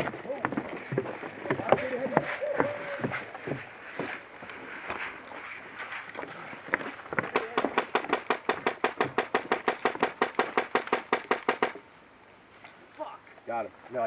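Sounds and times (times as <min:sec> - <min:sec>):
airsoft gun full-auto burst: 0:07.8 - 0:11.8.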